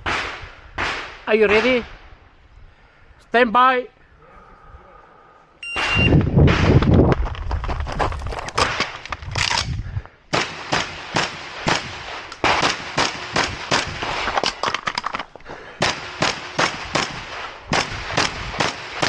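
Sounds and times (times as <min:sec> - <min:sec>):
rapid shotgun shots: 0:00.0 - 0:02.0, 0:10.3 - 0:14.4, 0:15.8 - 0:19.0.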